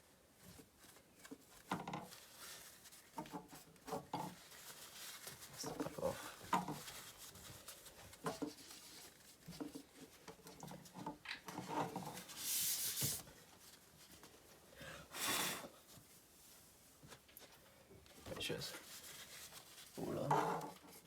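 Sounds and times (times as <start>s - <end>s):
soft handling rustles: 0.0s - 14.8s, 15.8s - 21.0s
tissue wiping and rubbing: 0.6s - 10.2s, 12.2s - 14.6s, 15.8s - 17.6s, 18.5s - 20.1s.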